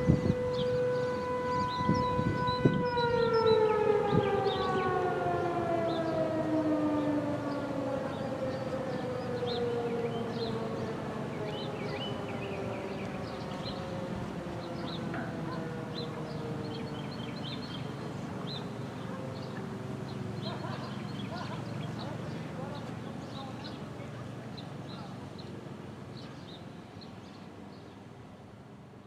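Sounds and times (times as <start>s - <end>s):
warning siren winding down: 0.0s - 20.6s
faint birds chirping: 0.1s - 28.4s.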